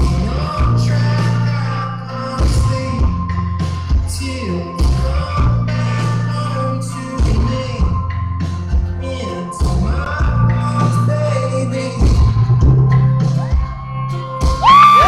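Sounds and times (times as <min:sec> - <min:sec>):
person singing: 0:00.0 - 0:03.2, 0:04.1 - 0:08.0, 0:09.0 - 0:12.4
bass notes: 0:00.0 - 0:15.0
live pop-rock band: 0:00.0 - 0:15.0
drum beat: 0:14.4 - 0:15.0.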